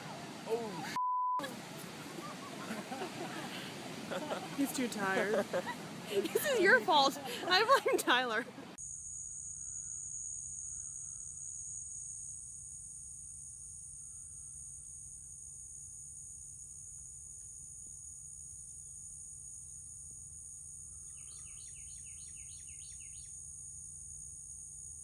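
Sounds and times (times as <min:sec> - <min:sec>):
insects trilling: 0:08.8 - 0:25.0
bird chirping: 0:21.0 - 0:23.4.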